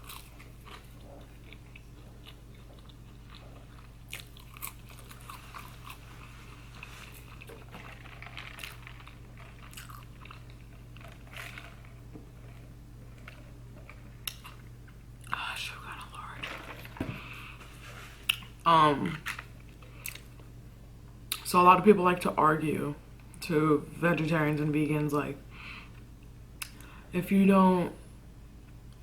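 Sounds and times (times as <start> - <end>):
person chewing food: 0.0 - 18.6, 19.2 - 20.6.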